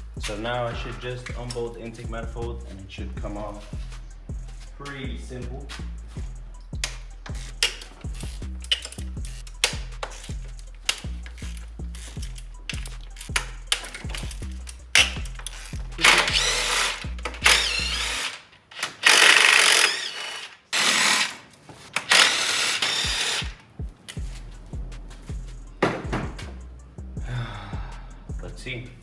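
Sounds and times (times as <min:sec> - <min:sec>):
background music: 0:00.0 - 0:18.3, 0:22.1 - 0:29.0
ratchet wrench clicking: 0:06.6 - 0:21.4, 0:22.0 - 0:24.2
power tool running: 0:13.9 - 0:23.6.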